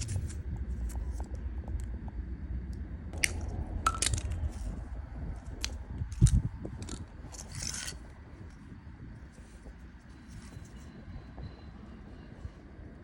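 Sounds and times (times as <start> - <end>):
low rumble: 0.0 - 13.0
small hard objects clinking: 3.2 - 4.7, 5.6 - 8.0.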